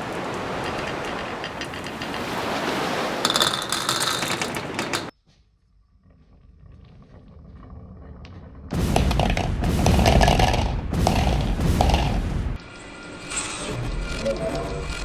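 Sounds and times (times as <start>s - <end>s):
marbles rattling along tracks: 3.2s - 5.1s.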